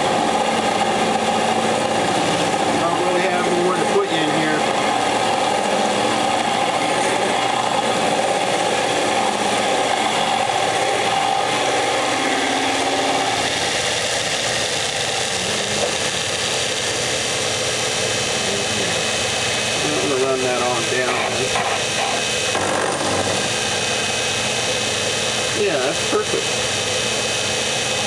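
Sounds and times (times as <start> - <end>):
metal lathe machining: 0.0 - 28.0.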